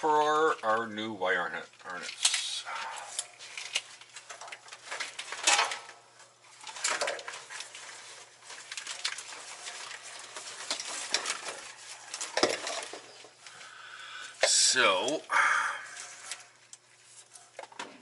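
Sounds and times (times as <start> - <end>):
parts clinking and clattering: 1.8 - 13.5.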